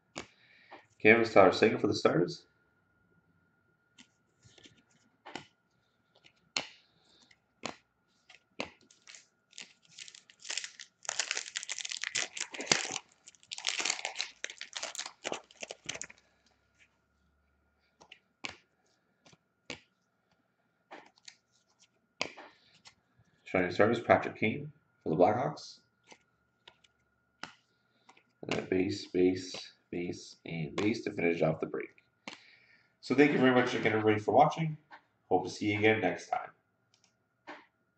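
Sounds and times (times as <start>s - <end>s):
cards clicking and snapping: 6.2s - 16.2s, 18.0s - 18.6s, 26.1s - 28.7s
foil wrapper tearing and crinkling: 8.9s - 16.2s.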